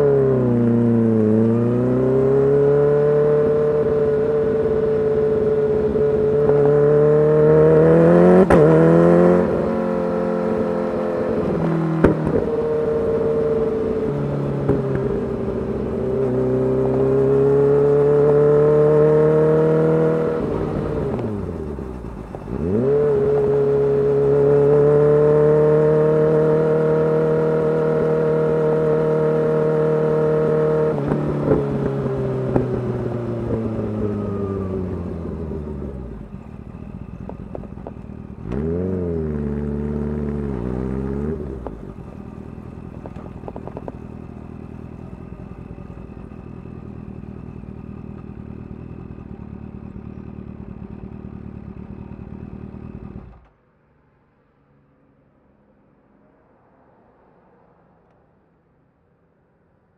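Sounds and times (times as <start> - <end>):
motorcycle engine revving: 0.0 - 53.6
motorcycle engine idling: 20.6 - 22.8, 32.1 - 38.5, 41.5 - 53.4
exhaust pops and crackles: 37.0 - 38.4, 41.6 - 44.6.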